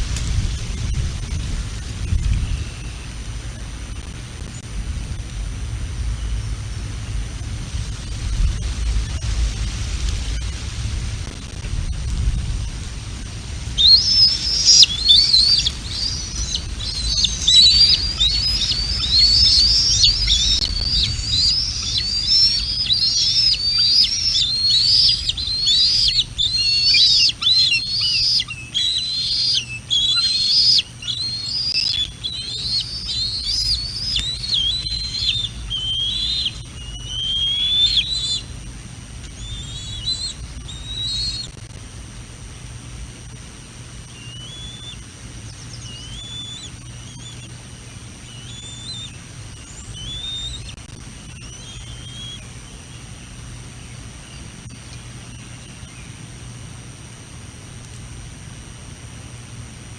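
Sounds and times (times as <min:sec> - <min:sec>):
wind on microphone: 0:00.0 - 0:28.1
eagle calling: 0:11.2 - 0:41.8, 0:44.0 - 0:53.3.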